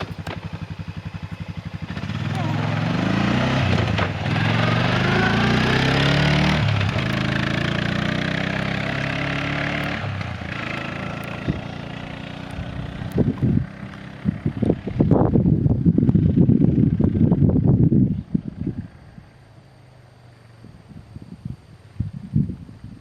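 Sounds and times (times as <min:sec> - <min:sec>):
snowmobile engine accelerating: 0:00.0 - 0:14.6
wind thumps on microphone: 0:12.5 - 0:18.9.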